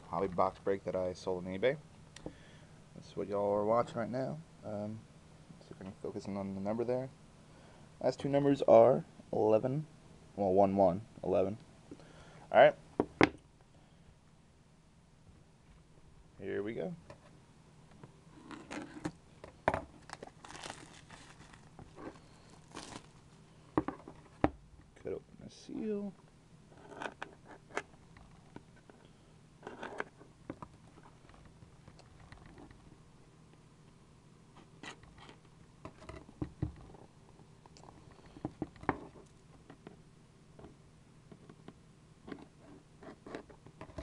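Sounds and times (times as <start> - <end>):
plastic wrapping crinkling: 20.0 - 23.3.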